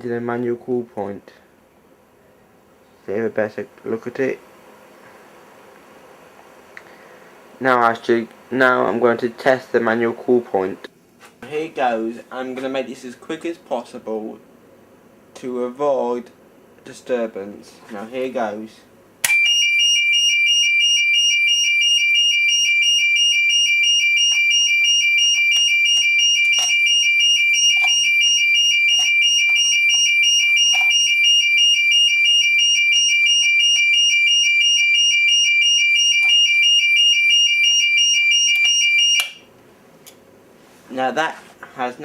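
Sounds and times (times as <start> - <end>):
high-pitched electronic fire alarm: 19.2 - 39.5.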